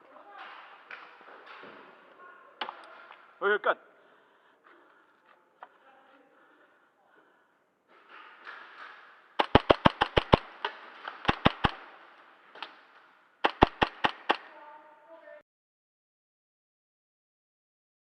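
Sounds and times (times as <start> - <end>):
airsoft gun shots: 9.4 - 12.8, 13.4 - 14.5.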